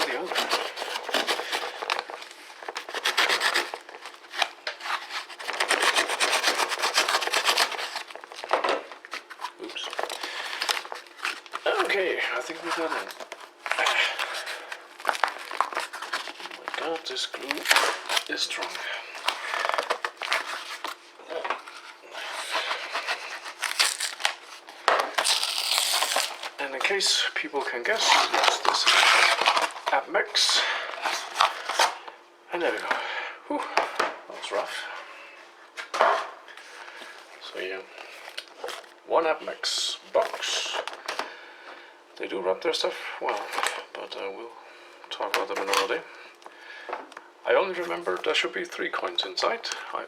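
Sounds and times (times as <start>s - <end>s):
blade sawing through cardboard: 0.0s - 2.0s, 2.8s - 3.8s, 4.9s - 8.1s
packaging crinkling: 0.0s - 30.0s
cardboard box being torn open: 15.0s - 20.9s, 22.7s - 24.4s, 25.1s - 26.6s, 28.0s - 29.9s.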